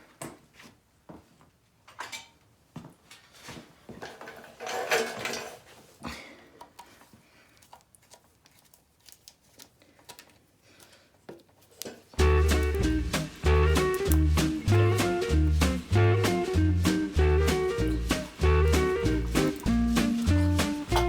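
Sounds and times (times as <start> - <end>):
hand tools clinking: 12.2 - 21.0.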